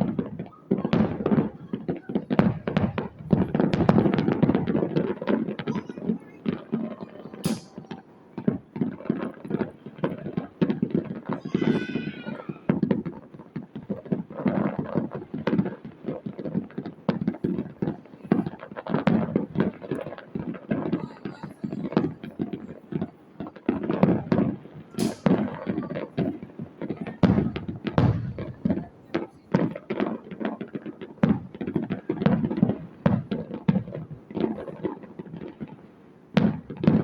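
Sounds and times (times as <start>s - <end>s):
fireworks bangs and crackling: 0.0s - 37.0s
pitched cry or whistle: 11.3s - 12.8s.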